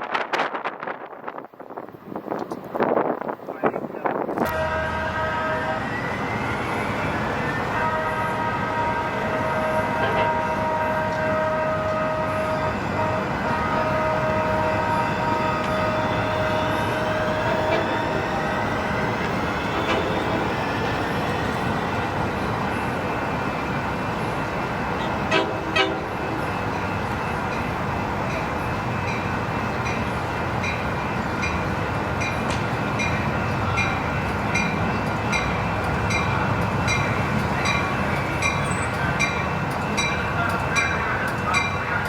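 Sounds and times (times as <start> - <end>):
train rumbling by: 0.0 - 42.0
train horn chord: 4.4 - 23.2, 25.0 - 26.2.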